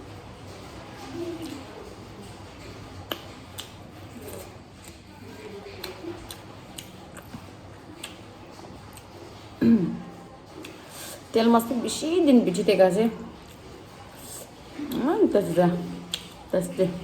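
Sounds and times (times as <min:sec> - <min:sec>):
chewing fish: 0:00.0 - 0:17.0
wet mouth clicks and smacks: 0:03.1 - 0:05.0, 0:08.0 - 0:08.3.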